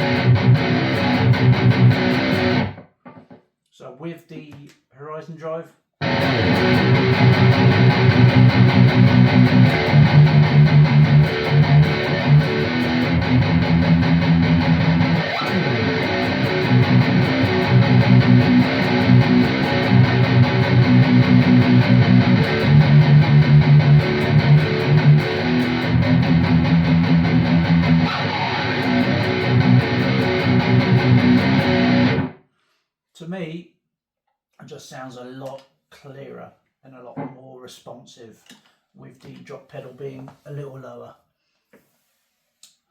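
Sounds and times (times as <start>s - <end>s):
distorted electric guitar riffs: 0.0s - 3.3s, 6.0s - 32.4s.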